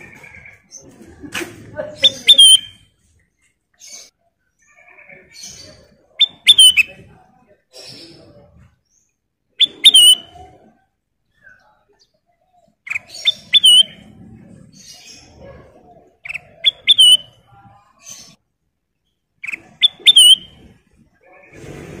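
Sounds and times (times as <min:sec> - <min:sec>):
bulbul whistling: 0:02.1 - 0:02.9, 0:06.2 - 0:07.0, 0:09.6 - 0:10.5, 0:12.9 - 0:14.1, 0:16.3 - 0:17.4, 0:19.4 - 0:20.7.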